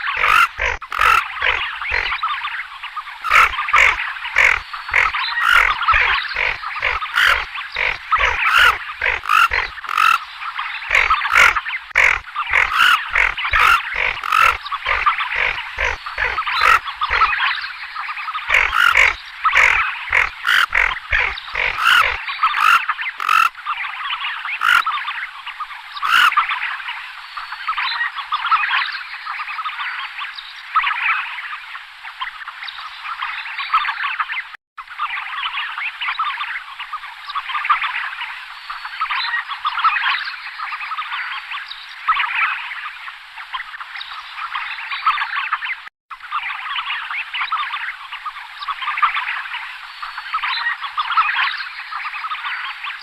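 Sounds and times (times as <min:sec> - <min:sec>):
chorus of animal calls: 0:00.0 - 0:17.6, 0:18.3 - 0:23.5, 0:24.5 - 0:24.9, 0:26.0 - 0:26.5.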